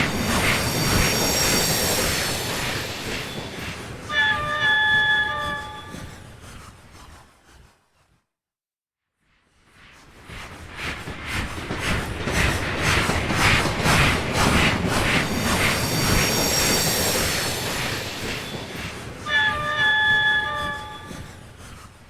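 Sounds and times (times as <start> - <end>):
high steady squeal: 0.0 - 6.8, 12.9 - 22.0
steam locomotive chuffing: 0.0 - 7.0, 10.4 - 22.0.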